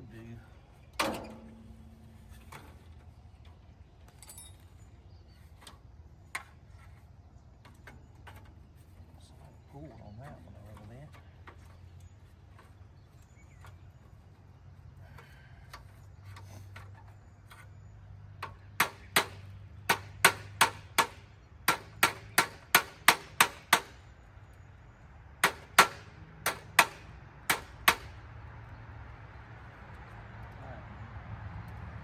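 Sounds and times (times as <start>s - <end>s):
hammer striking in sharp taps: 18.4s - 24.0s.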